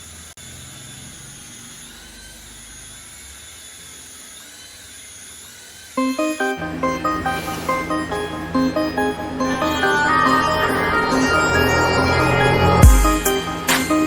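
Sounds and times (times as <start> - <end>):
toy electric motor whining: 0.0 - 6.0.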